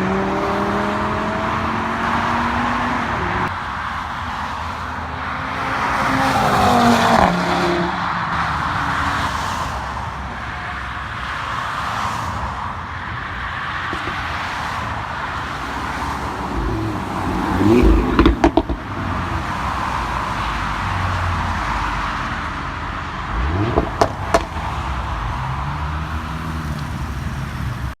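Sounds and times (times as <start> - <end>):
road and wind noise: 0.0 - 28.0
car engine revving: 15.6 - 19.4, 23.3 - 26.7
exhaust pops and bangs: 16.6 - 18.9, 23.6 - 24.6.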